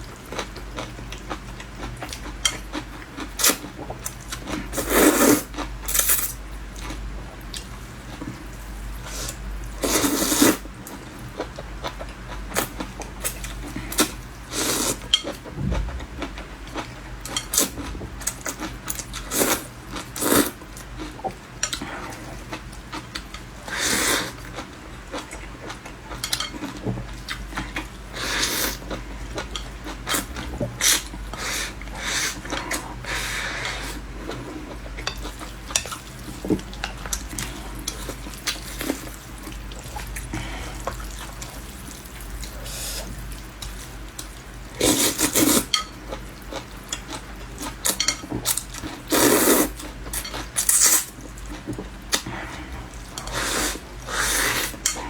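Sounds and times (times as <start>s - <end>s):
utensils clinking against a bowl: 26.1s - 26.9s, 44.9s - 46.1s, 46.9s - 49.0s, 50.1s - 51.2s.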